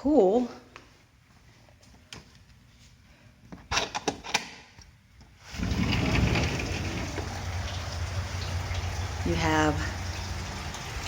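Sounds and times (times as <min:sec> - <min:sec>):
door unlatching and opening: 0:05.5 - 0:07.4.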